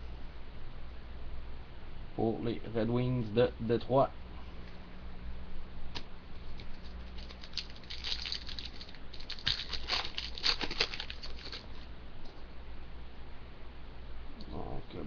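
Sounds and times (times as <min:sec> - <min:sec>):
cards flicking and rustling: 0:05.9 - 0:11.8.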